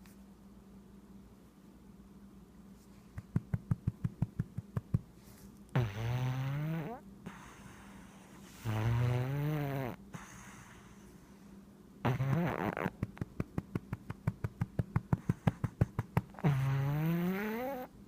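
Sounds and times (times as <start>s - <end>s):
cat snoring: 5.8s - 11.4s, 12.0s - 13.1s, 15.2s - 17.9s.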